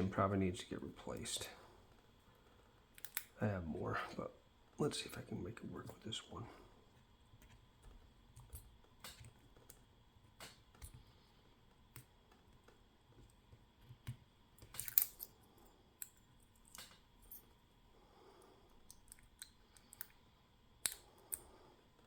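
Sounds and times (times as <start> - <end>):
small metallic clicks: 3.0 - 3.3.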